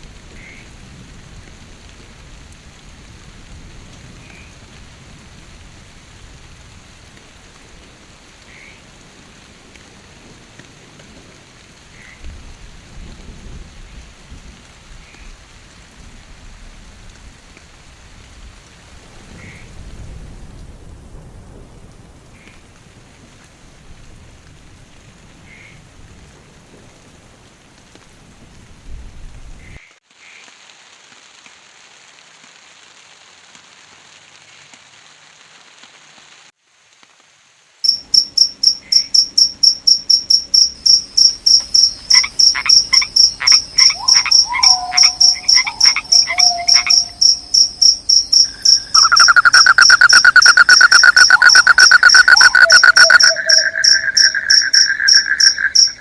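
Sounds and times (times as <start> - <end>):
rain hissing: 0.0 - 56.0
high-pitched pulsed insect trill: 37.9 - 56.0
lower pulsed frog call: 37.9 - 56.0
short chirping calls: 37.9 - 56.0.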